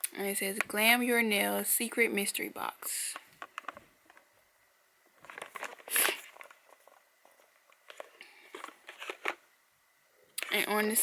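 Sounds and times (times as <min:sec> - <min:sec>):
packaging rustling: 0:05.2 - 0:09.4.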